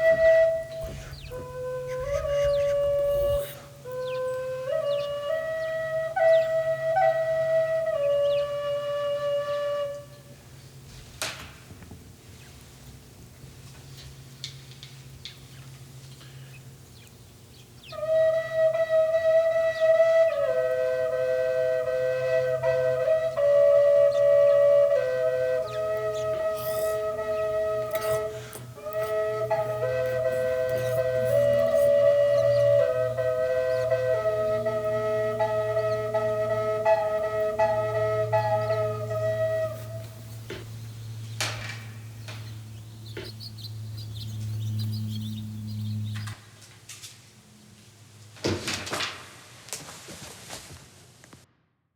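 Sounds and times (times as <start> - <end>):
drone flute music: 0.0 - 10.6, 17.8 - 46.4.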